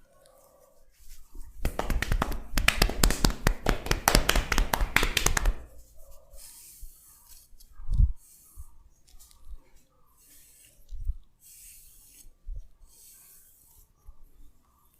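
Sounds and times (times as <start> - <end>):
hands rustling: 0.2 - 13.9
hands tapping on head: 1.5 - 5.7.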